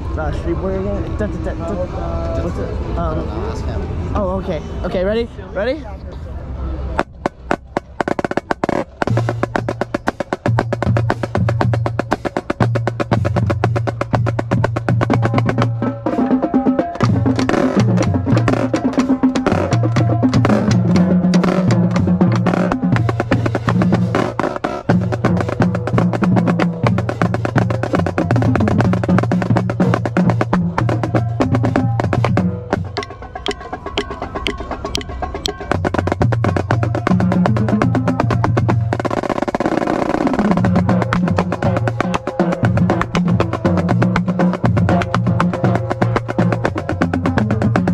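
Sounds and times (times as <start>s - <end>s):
low bass drum notes: 7.0s - 47.9s
marching snare drum strokes: 7.0s - 47.9s.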